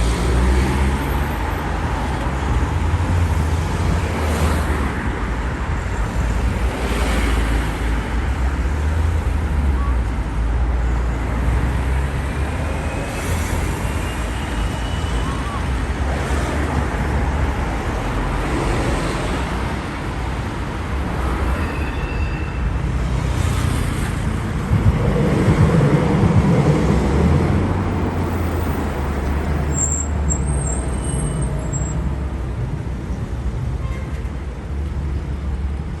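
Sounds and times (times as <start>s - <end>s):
street traffic rumble: 0.0s - 36.0s
heavy vehicle passing: 23.0s - 29.7s.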